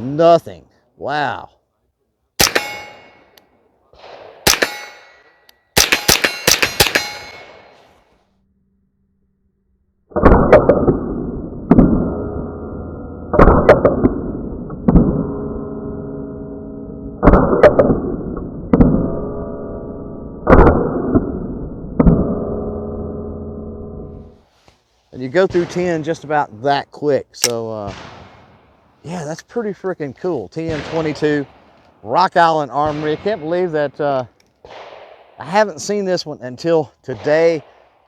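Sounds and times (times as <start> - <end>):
rifle shots: 2.4 - 3.4, 4.0 - 8.0, 27.4 - 29.0, 30.6 - 36.0, 37.2 - 38.0
steel target ringing: 2.4 - 3.4, 4.1 - 7.9.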